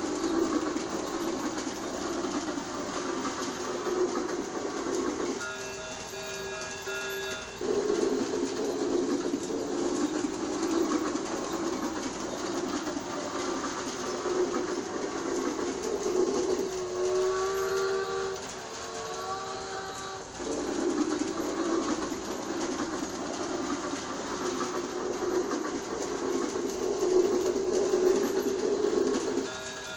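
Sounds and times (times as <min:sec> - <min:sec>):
toy train running: 0:00.0 - 0:29.9
electronic train whistle: 0:16.9 - 0:20.4.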